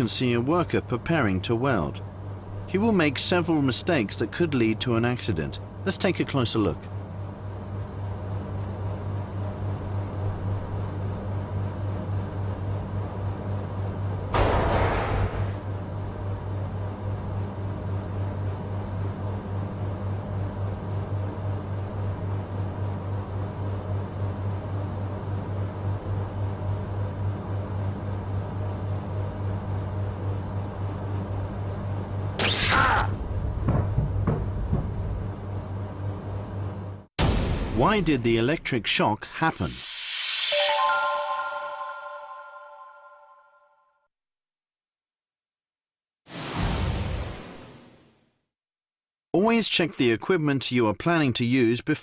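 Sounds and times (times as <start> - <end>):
low machine hum: 0.0 - 39.8
loud burst of noise: 14.3 - 15.7, 37.2 - 37.9, 39.6 - 40.7, 46.3 - 48.4.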